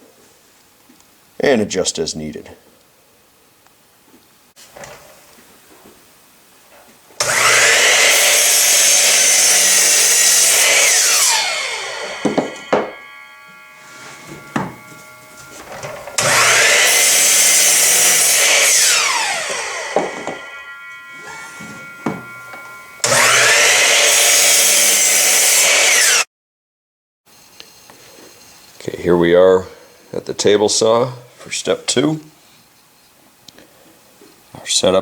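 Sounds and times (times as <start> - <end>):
electric chop saw cutting wood: 7.2 - 26.3
sharp knocks: 12.0 - 18.2, 19.9 - 23.5.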